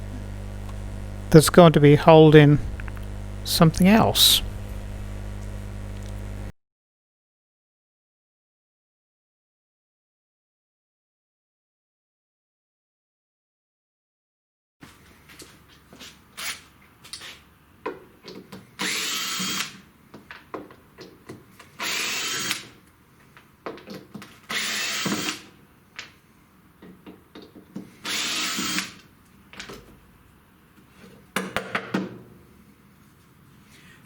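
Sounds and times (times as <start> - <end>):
small power tool running: 0.0 - 6.5.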